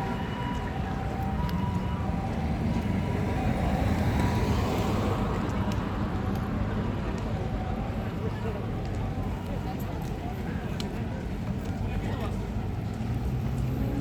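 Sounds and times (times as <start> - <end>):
two-tone ambulance siren: 0.0 - 8.2
road traffic: 0.0 - 14.0.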